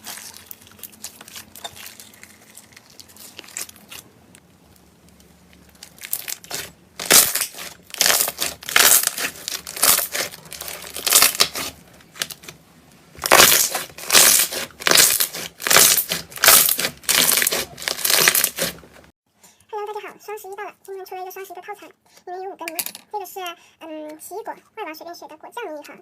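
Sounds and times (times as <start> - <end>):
slime squishing crunchily: 0.0 - 19.1.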